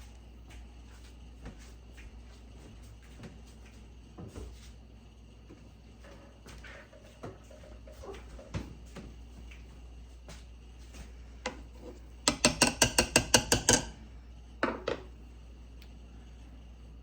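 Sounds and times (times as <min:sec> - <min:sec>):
utensil clacking against mixing bowl: 0:11.5 - 0:14.0.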